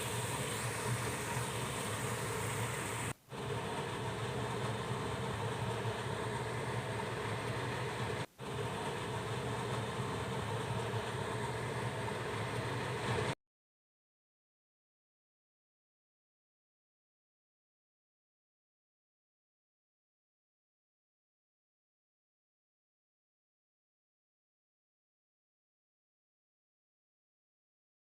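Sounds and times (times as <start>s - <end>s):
machine hum with hiss: 0.0s - 13.4s.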